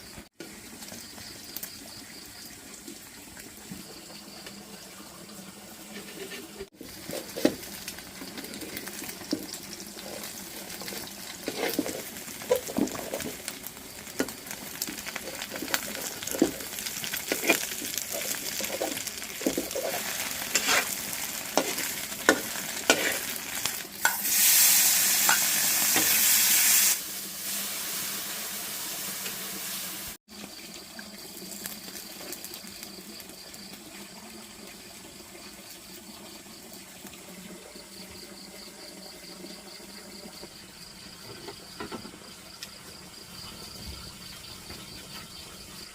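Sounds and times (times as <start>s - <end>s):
food sizzling in a pan: 0.0s - 42.1s
spatula scraping a pan: 5.9s - 26.2s.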